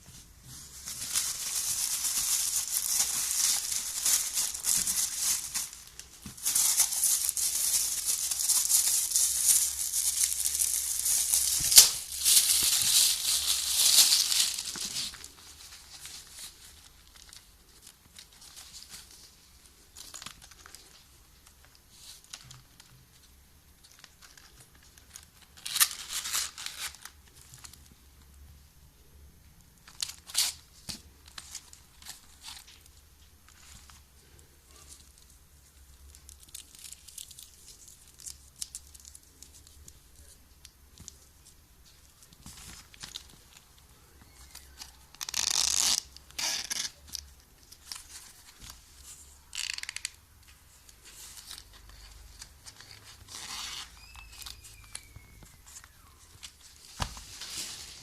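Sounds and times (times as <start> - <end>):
crinkling and rustling: 0.0 - 28.4, 29.8 - 58.0.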